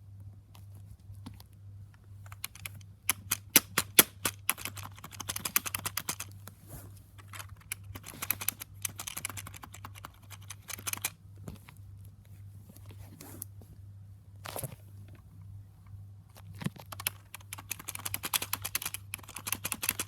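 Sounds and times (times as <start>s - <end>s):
typing on computer keyboard: 2.3s - 6.3s, 7.2s - 11.2s, 16.6s - 20.0s.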